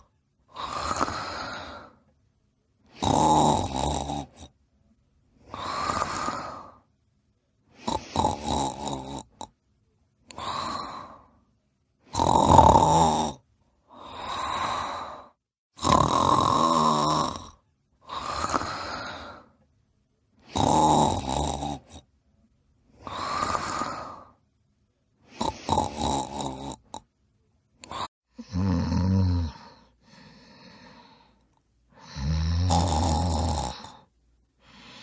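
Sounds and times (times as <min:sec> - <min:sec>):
person snoring: 0:00.0 - 0:02.0, 0:02.9 - 0:04.6, 0:05.4 - 0:06.9, 0:07.7 - 0:09.5, 0:10.3 - 0:11.4, 0:12.1 - 0:19.6, 0:20.4 - 0:22.1, 0:22.9 - 0:24.4, 0:25.2 - 0:27.0, 0:27.8 - 0:35.0.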